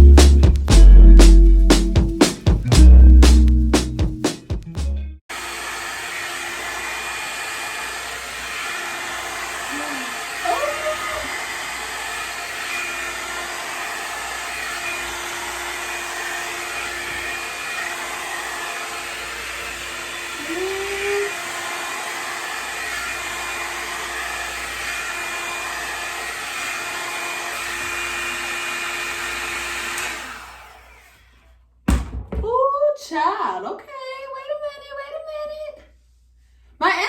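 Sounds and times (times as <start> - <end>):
hair dryer blowing air: 5.3 - 31.2.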